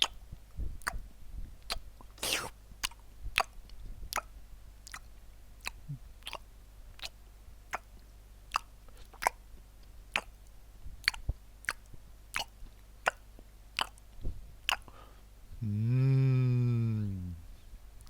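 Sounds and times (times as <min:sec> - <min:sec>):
chewing crunchy food: 0:01.7 - 0:14.9.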